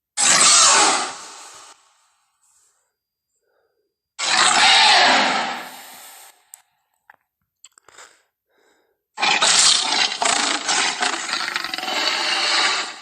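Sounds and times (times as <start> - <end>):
dinosaur roar: 0.2 - 1.3, 4.2 - 5.8, 9.2 - 13.0.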